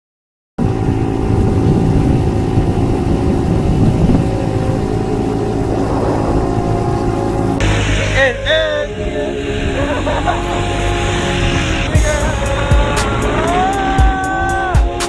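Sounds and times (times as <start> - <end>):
small motorbike engine running: 0.6 - 7.6, 11.7 - 14.9.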